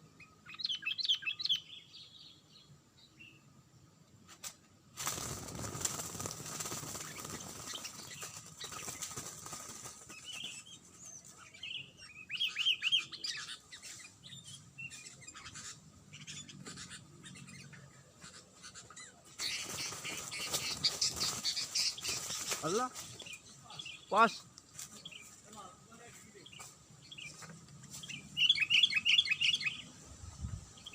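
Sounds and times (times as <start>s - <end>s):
wings flapping: 4.4s - 11.4s, 19.4s - 23.3s
bulbuls chirping: 5.0s - 30.9s.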